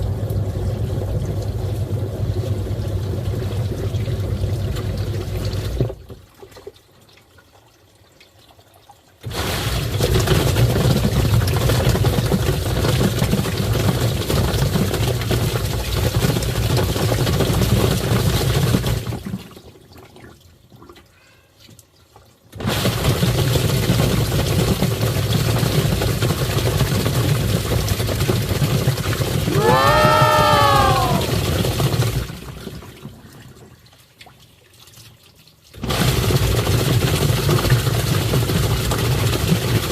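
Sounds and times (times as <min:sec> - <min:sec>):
water churning: 0:27.9 - 0:33.4.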